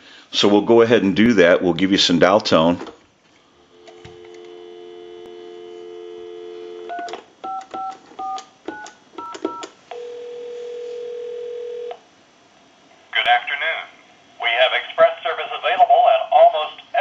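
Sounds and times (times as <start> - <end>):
telephone dial tone: 3.7 - 12.0
telephone ringing tone: 3.7 - 12.0
touch-tone digits dialed: 6.9 - 9.6.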